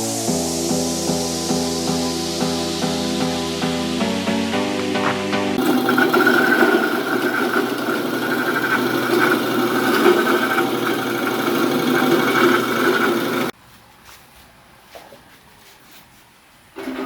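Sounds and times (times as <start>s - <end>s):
background music: 0.0s - 7.4s
slicing machine droning: 5.6s - 13.5s, 16.8s - 17.0s.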